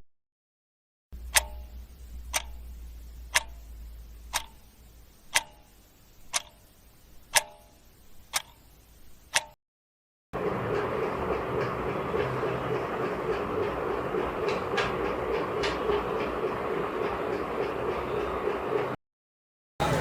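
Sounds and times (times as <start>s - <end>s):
faint low hum: 1.2s - 9.4s
clock ticking: 1.2s - 9.6s.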